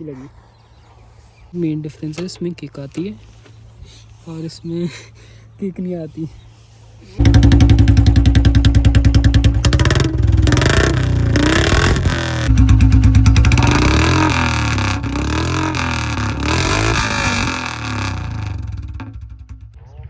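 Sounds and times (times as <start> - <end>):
motorcycle engine revving: 7.2 - 20.0.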